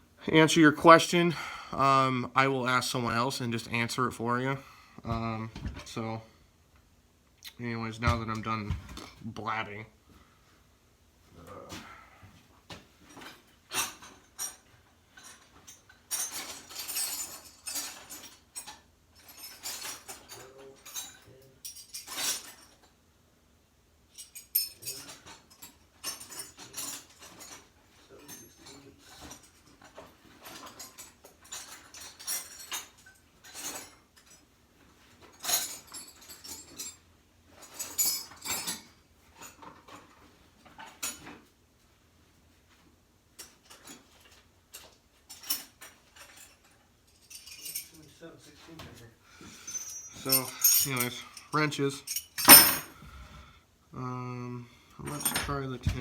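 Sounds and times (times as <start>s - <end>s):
metal wrenches clinking: 13.1s - 22.9s, 24.1s - 41.4s, 43.4s - 48.2s, 49.5s - 52.9s, 55.0s - 56.0s.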